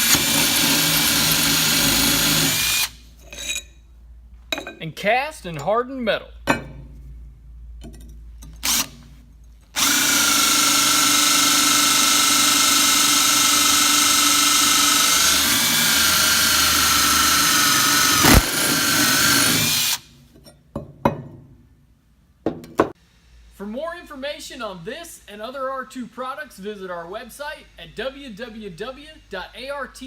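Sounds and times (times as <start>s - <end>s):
electric drill boring into metal: 0.0s - 3.0s, 8.6s - 8.9s, 9.8s - 20.0s.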